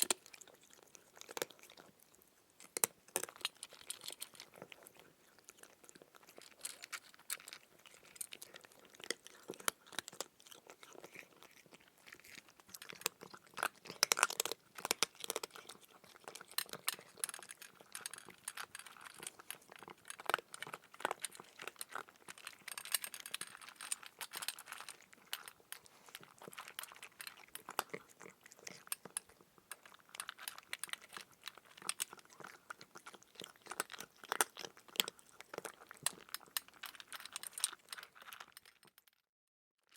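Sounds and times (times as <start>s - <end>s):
cat chewing food: 0.0s - 39.2s.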